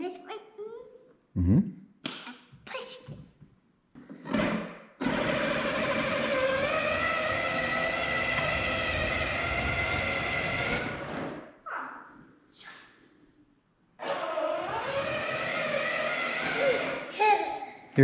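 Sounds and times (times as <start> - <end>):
toy car electric motor whining: 5.0 - 11.4, 14.0 - 17.3.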